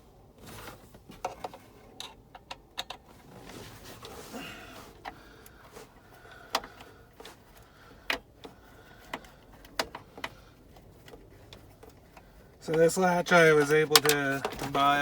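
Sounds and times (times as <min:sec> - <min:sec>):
clicks and knocks of plastic trim: 0:08.0 - 0:15.0.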